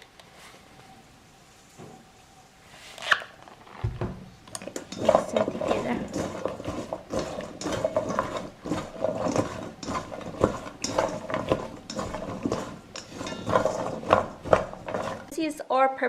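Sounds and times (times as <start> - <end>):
green beans clattering in a bowl: 4.5 - 15.4.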